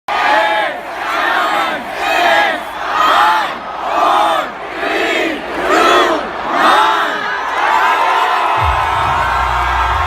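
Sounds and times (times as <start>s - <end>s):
crowd cheering and shouting: 0.1s - 10.0s.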